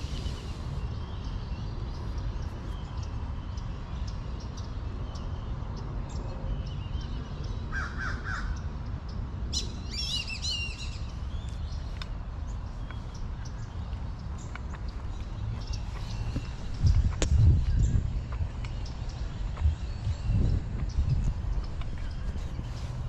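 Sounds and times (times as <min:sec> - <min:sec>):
high warbling bird chatter: 0:06.6 - 0:23.0
harsh caw-like bird calls: 0:07.7 - 0:08.7
steady low rumble: 0:10.6 - 0:23.0.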